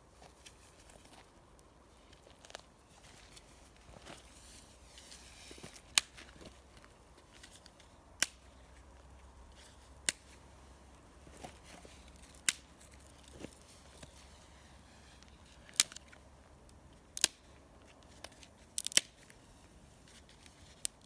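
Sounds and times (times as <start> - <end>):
fire crackling: 0.3 - 21.0
campfire wood popping: 5.5 - 9.2, 10.0 - 14.3, 15.1 - 19.4.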